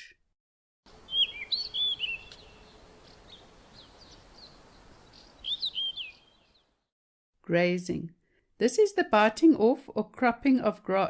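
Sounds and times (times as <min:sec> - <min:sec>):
bird singing whistled phrases: 0:01.1 - 0:02.5, 0:05.4 - 0:06.6.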